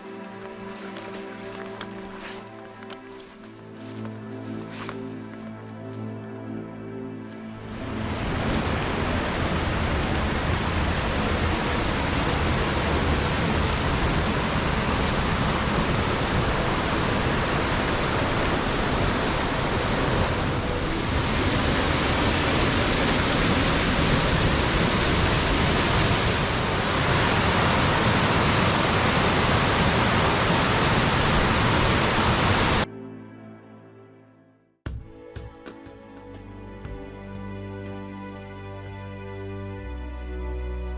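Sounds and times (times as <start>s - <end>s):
river rapids rushing: 7.7s - 32.8s.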